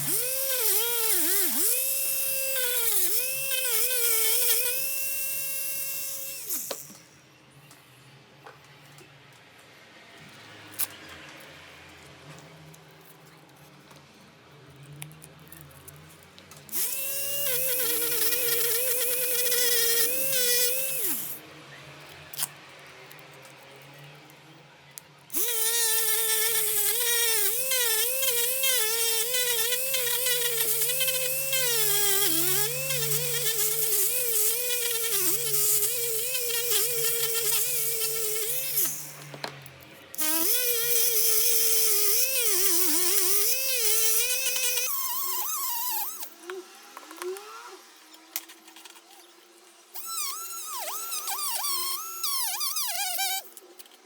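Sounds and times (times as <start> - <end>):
electric power tool whining: 0.0 - 7.0, 16.7 - 21.4, 25.3 - 39.6, 40.2 - 49.0, 49.9 - 53.6.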